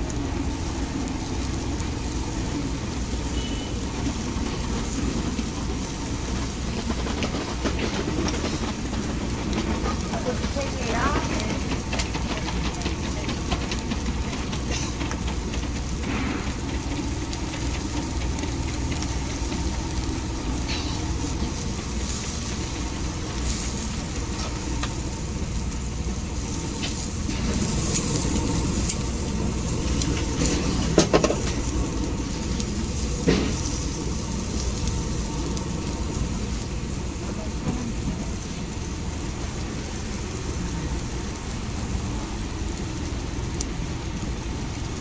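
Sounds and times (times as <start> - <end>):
skewers sizzling on grill: 0.0 - 45.0
sharp clicks and clatters: 3.9 - 38.2.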